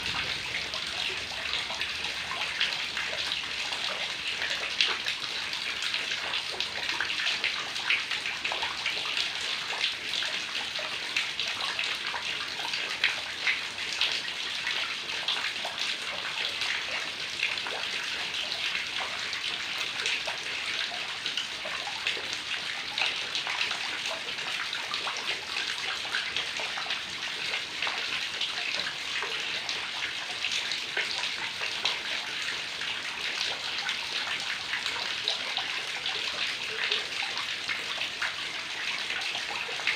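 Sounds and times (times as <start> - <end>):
heavy rain falling: 0.0 - 3.5.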